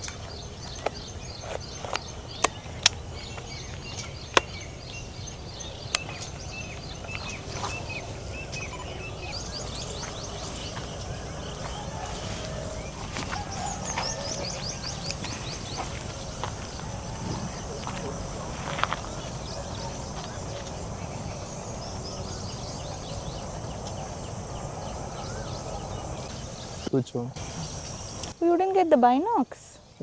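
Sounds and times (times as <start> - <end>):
sharp clicks: 0.0 - 4.6
small birds chirping: 0.0 - 30.0.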